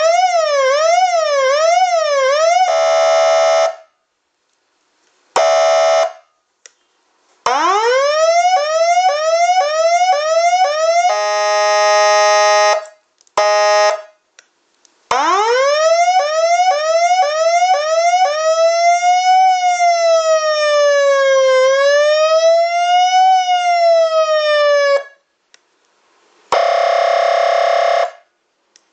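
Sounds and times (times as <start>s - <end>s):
siren wail rising and falling: 0.0s - 3.8s, 7.5s - 14.1s, 15.1s - 25.2s
electronic siren horn blast: 0.0s - 3.9s, 5.4s - 6.2s, 7.5s - 14.1s, 26.5s - 28.3s
steady electronic horn tone: 26.5s - 28.2s.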